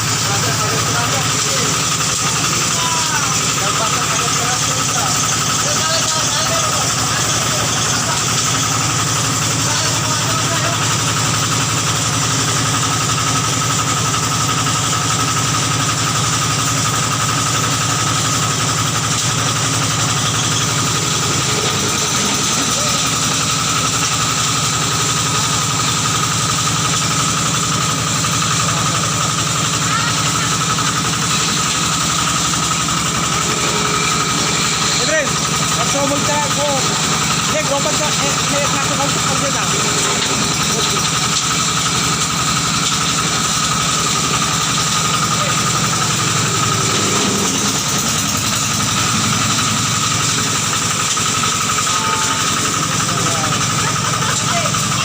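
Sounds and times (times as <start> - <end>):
grass chopper engine running: 0.0 - 55.0.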